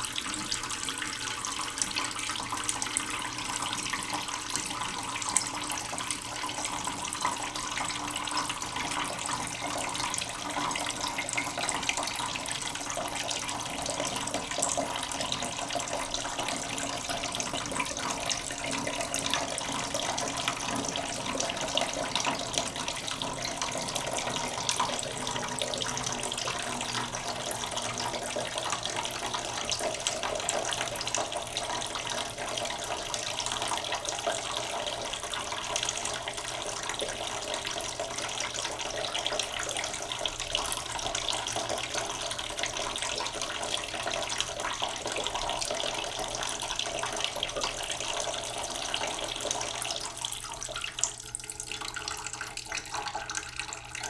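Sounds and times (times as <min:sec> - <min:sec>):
tap water running into a pot: 0:00.0 - 0:54.0.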